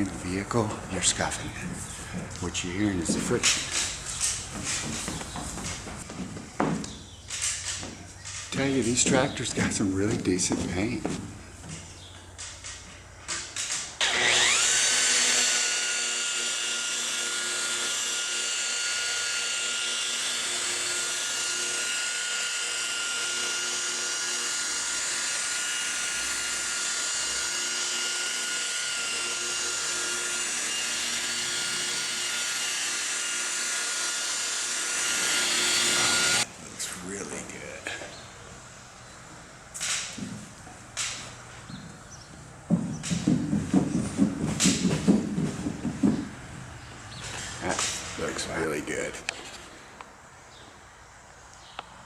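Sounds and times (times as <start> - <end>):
electric polisher whine: 14.0 - 36.5.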